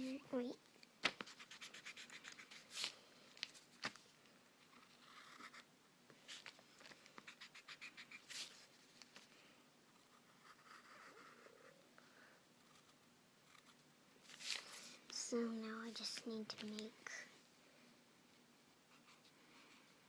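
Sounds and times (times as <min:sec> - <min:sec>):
drawing tool scratching paper: 0:01.3 - 0:02.8, 0:04.7 - 0:05.6, 0:07.2 - 0:08.6, 0:10.0 - 0:11.7.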